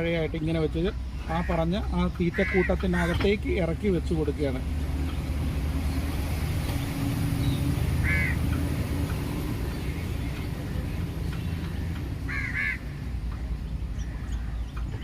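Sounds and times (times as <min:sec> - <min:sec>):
crow cawing: 0:02.3 - 0:03.1, 0:08.0 - 0:08.4, 0:12.3 - 0:13.0.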